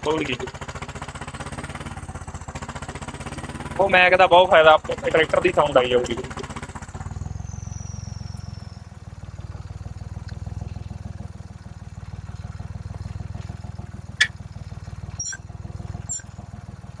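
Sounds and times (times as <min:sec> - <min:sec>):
tractor diesel engine running: 0:00.0 - 0:17.0
short high chirps: 0:15.2 - 0:15.4, 0:16.1 - 0:16.3.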